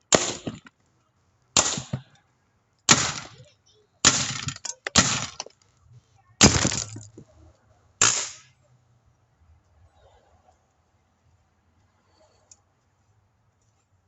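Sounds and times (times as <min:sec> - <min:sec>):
air rifle shots: 0:00.1 - 0:00.7, 0:01.6 - 0:02.1, 0:02.9 - 0:03.4, 0:04.0 - 0:05.4, 0:08.0 - 0:08.5.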